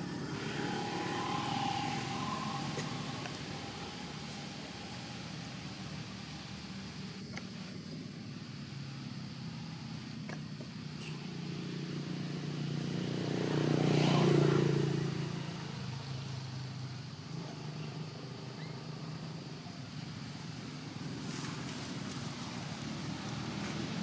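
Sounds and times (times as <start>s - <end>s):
vehicle engine passing by: 0.0s - 7.0s, 10.9s - 19.4s, 21.1s - 24.0s.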